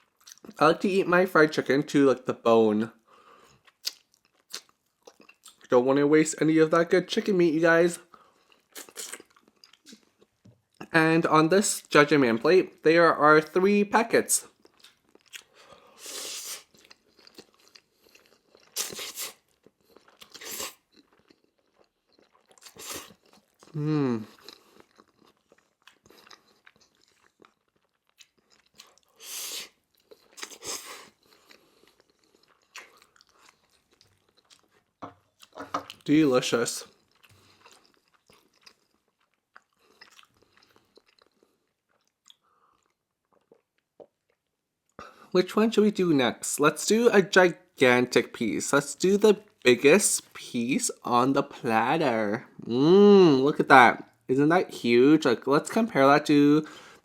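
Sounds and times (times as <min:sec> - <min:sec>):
soft chewing: 0:03.1 - 0:05.7, 0:08.0 - 0:10.9, 0:14.5 - 0:36.0, 0:36.8 - 0:45.2
crunching of crisp food: 0:14.5 - 0:36.1, 0:36.8 - 0:44.6.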